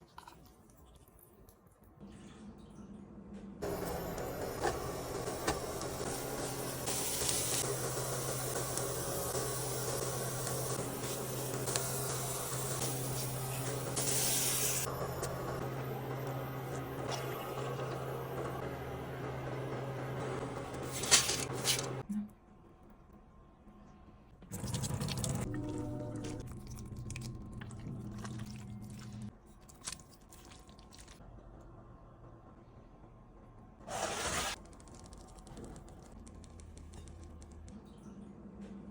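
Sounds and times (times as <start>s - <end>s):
cooking hiss: 3.6s - 14.9s
wet squishing of spaghetti: 26.5s - 31.2s.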